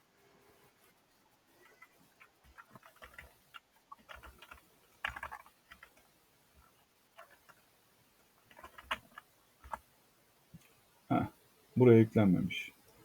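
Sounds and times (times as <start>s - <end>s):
keyboard typing: 1.6s - 7.8s, 8.4s - 9.9s.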